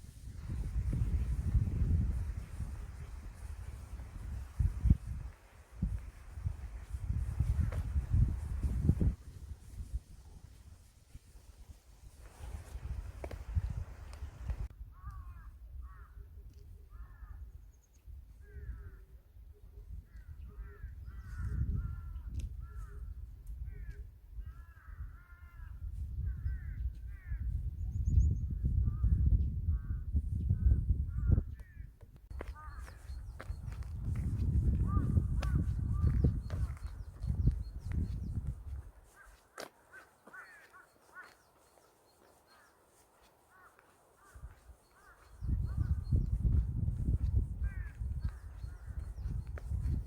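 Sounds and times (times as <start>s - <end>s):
wind rumbling on microphone: 0.0s - 50.0s
crows cawing: 15.0s - 16.2s, 23.7s - 25.8s, 31.6s - 33.6s, 34.8s - 36.9s, 39.0s - 46.0s, 47.6s - 49.4s
birds calling: 31.6s - 46.6s, 47.6s - 50.0s.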